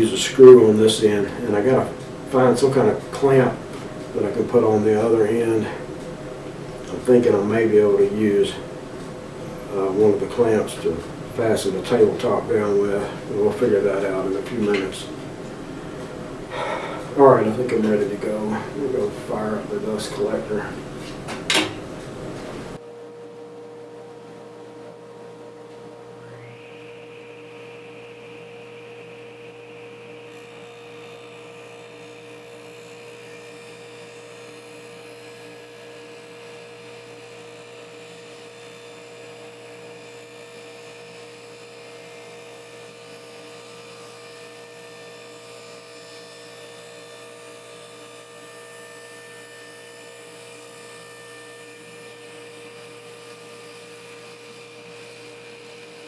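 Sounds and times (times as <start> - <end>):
machine whining: 0.0 - 22.8, 25.8 - 56.0
steady hiss: 0.0 - 22.8
dust collector humming: 0.0 - 23.1, 23.8 - 56.0.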